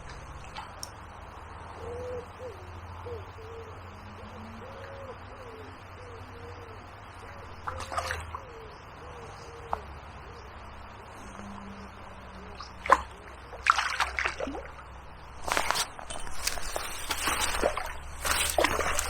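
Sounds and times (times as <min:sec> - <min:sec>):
bird cooing: 0:01.7 - 0:13.2, 0:15.4 - 0:19.0.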